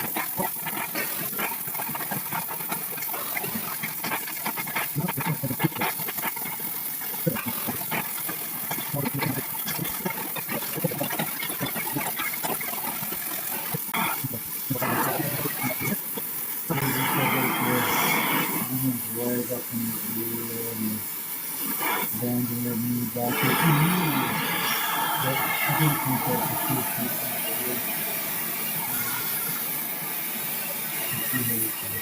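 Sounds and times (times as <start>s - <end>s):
crackles and pops of melting metal: 0.0s - 18.7s
welding torch flame hissing: 0.0s - 32.0s.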